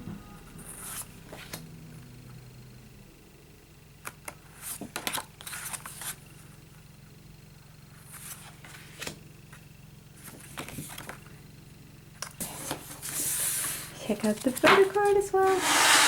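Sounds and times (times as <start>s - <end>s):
steady low hum: 0.0s - 16.0s
paper cards rustling: 12.4s - 16.0s.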